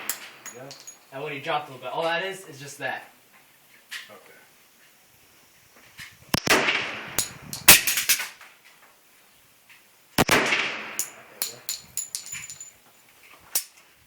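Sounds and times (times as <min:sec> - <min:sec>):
light metallic clicks and clinks: 0:00.1 - 0:01.2, 0:11.0 - 0:13.8
pistol shots with echo: 0:06.4 - 0:08.1, 0:10.2 - 0:12.3.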